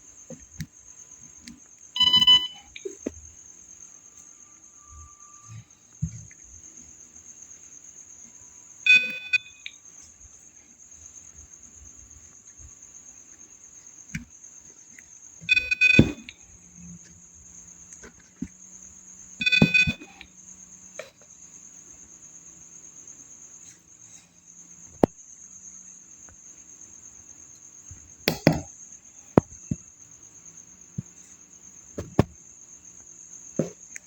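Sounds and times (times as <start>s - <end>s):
piezo buzzer beeps: 2.0s - 2.8s, 8.9s - 9.8s, 15.5s - 16.4s, 19.4s - 20.3s.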